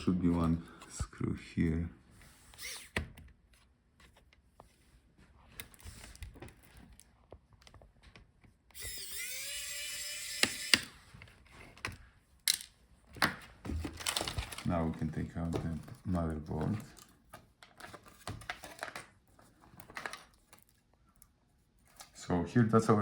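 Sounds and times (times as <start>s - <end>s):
electric screwdriver whining: 2.5s - 3.1s, 8.7s - 11.0s.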